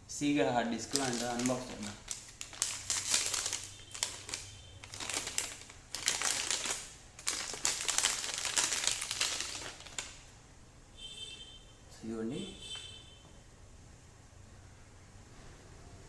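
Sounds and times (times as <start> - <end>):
packaging crinkling: 0.7 - 10.3.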